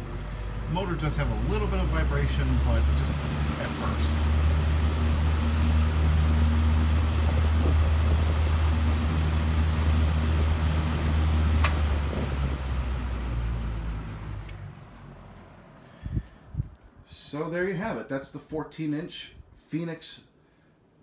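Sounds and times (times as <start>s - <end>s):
box fan motor hum and rushing air: 0.0s - 16.7s
sharp fan switch click: 11.6s - 11.9s.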